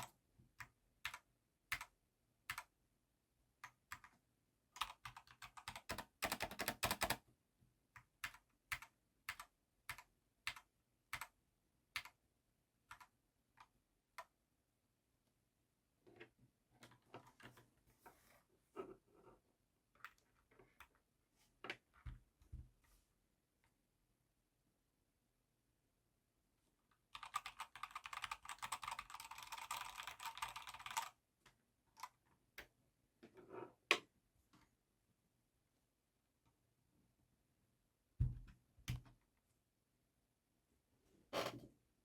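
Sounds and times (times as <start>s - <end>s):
mechanical keyboard typing: 4.8s - 7.2s, 27.1s - 31.2s.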